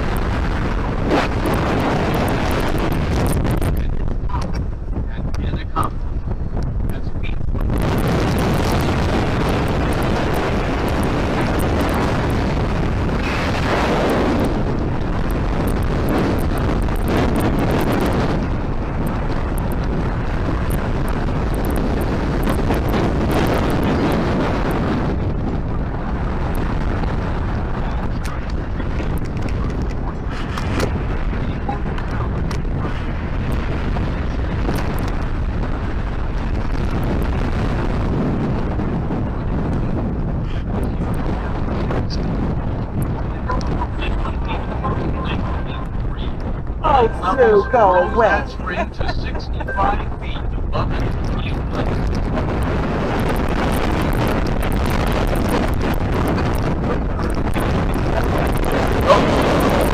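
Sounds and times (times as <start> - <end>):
wind buffeting microphone: 0.0 - 59.9
faint crackles: 50.2 - 59.9.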